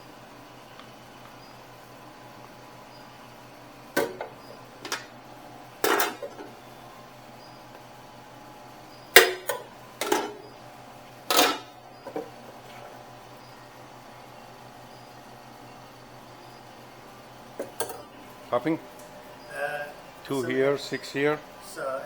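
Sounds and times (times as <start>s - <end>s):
steady low hum: 0.0s - 22.0s
utensils clanking against food pans: 4.0s - 5.2s, 5.8s - 6.6s, 9.2s - 10.4s, 11.3s - 12.8s.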